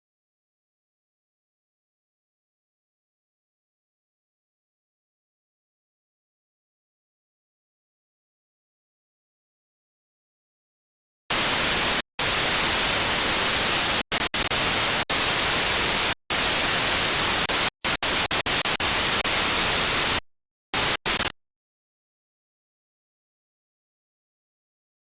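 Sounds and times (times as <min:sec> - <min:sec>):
loud static hiss: 0:11.3 - 0:20.2, 0:20.8 - 0:21.3.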